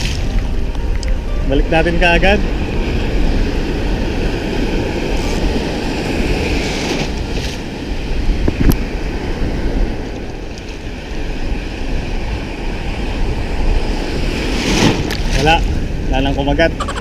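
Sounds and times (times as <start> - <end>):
sea waves washing on shore: 0.0 - 17.0
wind on microphone: 0.0 - 17.0.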